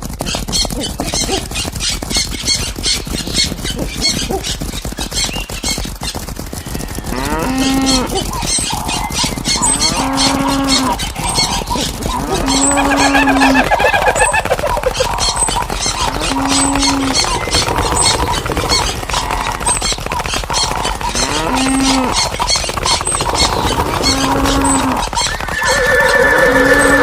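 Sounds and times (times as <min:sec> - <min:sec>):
galloping hooves: 0:00.0 - 0:27.0
cattle mooing: 0:06.9 - 0:13.6, 0:16.0 - 0:19.6, 0:21.0 - 0:22.2, 0:25.6 - 0:27.0.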